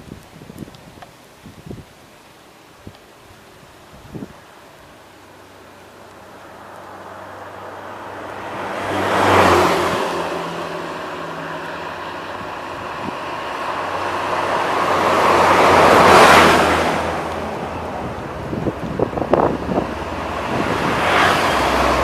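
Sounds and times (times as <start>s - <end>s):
buses passing at speed: 4.6s - 22.0s.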